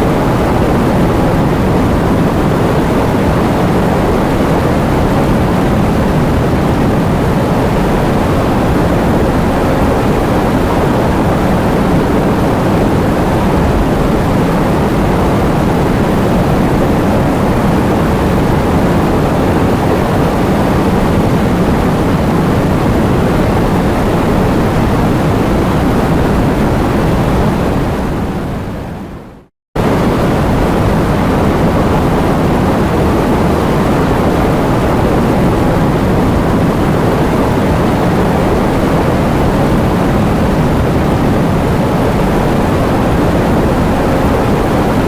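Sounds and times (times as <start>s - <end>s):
heavy rain with wind: 0.0s - 45.0s.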